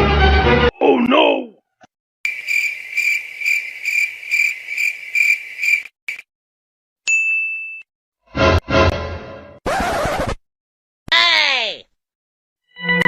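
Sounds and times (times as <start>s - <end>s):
crickets chirping: 2.3s - 6.2s
bright ding: 7.1s - 7.8s.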